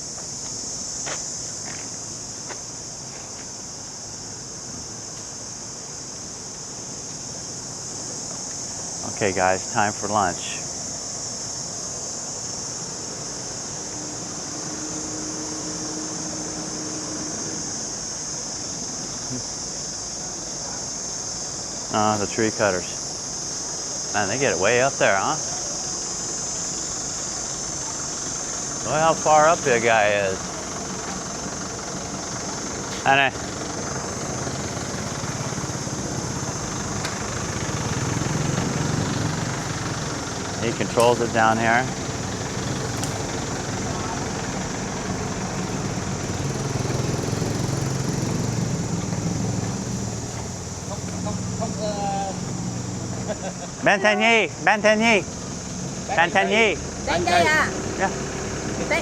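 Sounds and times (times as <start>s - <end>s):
engine idling: 0.0s - 59.0s
high-pitched insect drone: 0.0s - 59.0s.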